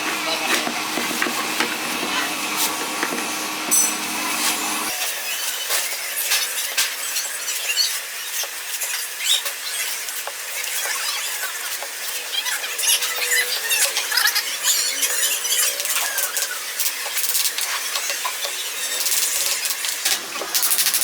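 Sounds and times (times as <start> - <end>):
small motor humming: 0.0 - 5.0.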